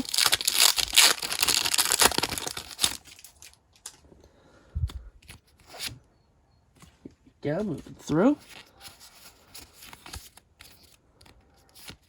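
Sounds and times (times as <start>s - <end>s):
foil wrapper crinkling: 0.0s - 3.9s.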